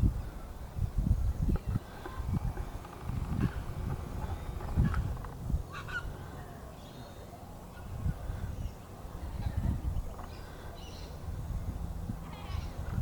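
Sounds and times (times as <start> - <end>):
bird calls and chirps: 5.7 - 11.2.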